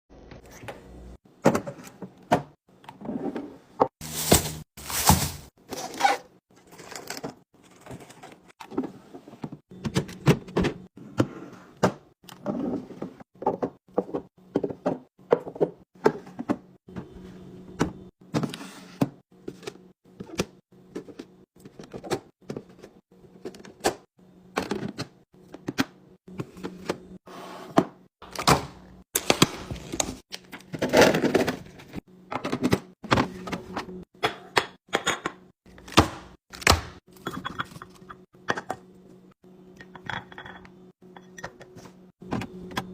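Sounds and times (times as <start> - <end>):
containers clattering in fridge: 27.7 - 38.8.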